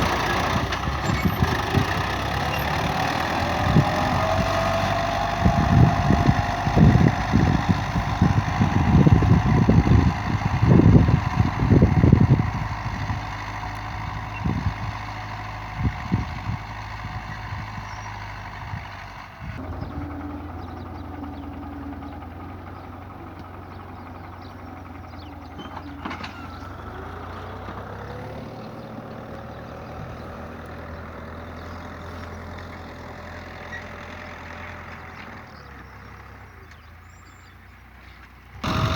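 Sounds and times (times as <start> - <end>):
wind buffeting microphone: 0.0 - 22.2, 27.5 - 32.1
tractor engine running: 0.0 - 38.9.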